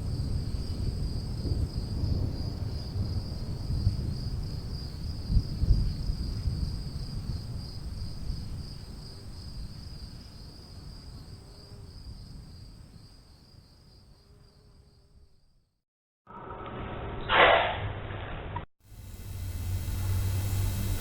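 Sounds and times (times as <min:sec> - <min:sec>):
low rumbling noise: 0:16.3 - 0:21.0
high-pitched insect trill: 0:18.9 - 0:21.0.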